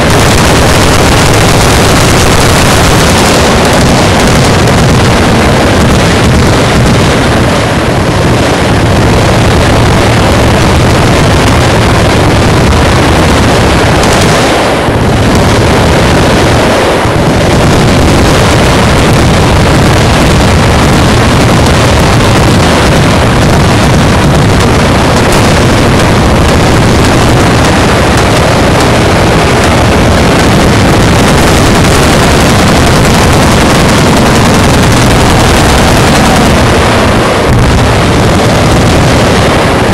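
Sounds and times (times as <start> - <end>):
machine guns firing: 22.2 - 37.0.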